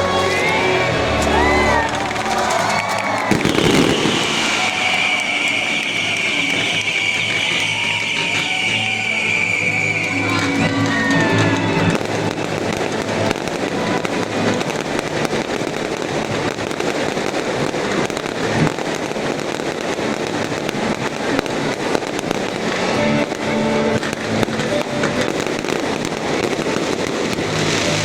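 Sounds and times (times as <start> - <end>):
music: 0.0 - 16.6, 20.2 - 28.0
fireworks banging and crackling: 0.0 - 28.0.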